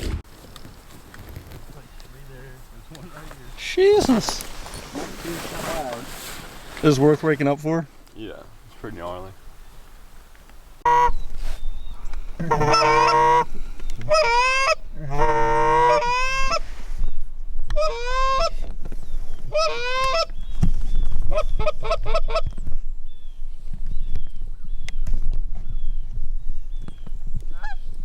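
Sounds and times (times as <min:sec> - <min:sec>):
goose honking and clucking: 0:12.4 - 0:13.5, 0:14.1 - 0:16.6, 0:17.8 - 0:18.6, 0:19.5 - 0:20.3.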